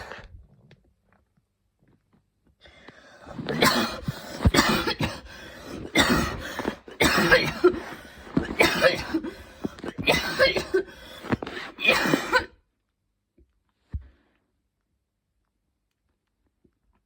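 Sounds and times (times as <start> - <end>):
woman coughing: 3.3 - 12.6.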